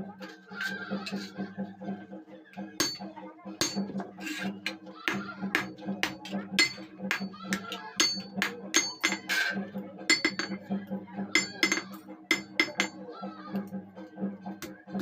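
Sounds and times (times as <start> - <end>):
hammer striking iron: 2.8 - 10.6, 11.4 - 13.0.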